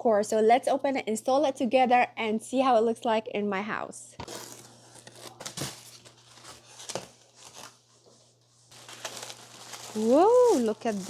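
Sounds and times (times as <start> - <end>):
tape and cardboard tearing: 4.2 - 7.8
packaging rustling: 4.2 - 7.9, 8.7 - 11.0.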